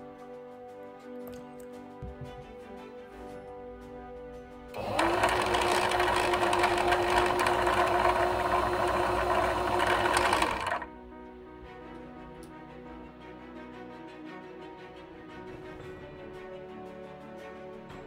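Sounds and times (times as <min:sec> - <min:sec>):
electric sewing machine running: 0:04.8 - 0:10.9.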